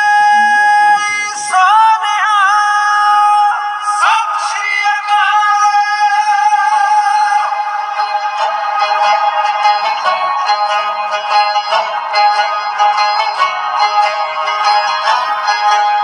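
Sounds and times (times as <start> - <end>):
synthesized voice-like melody: 0.0 - 2.5.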